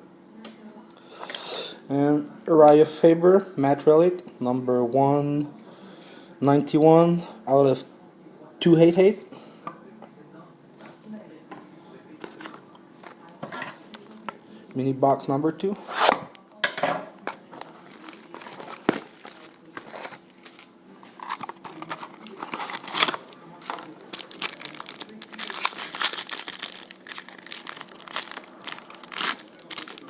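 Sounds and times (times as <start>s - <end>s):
packaging crinkling and tearing: 17.6s - 30.0s.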